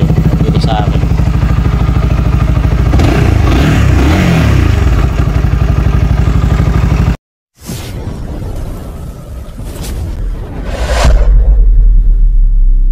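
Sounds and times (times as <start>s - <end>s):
motorcycle engine idling and revving: 0.0s - 7.2s.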